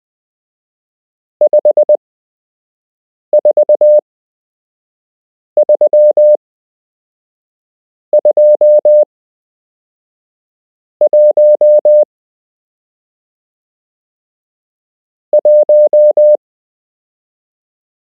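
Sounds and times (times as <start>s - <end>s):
morse code beeps: 3.4s - 4.0s, 5.6s - 6.4s, 8.2s - 9.0s, 11.1s - 12.0s, 15.4s - 16.4s.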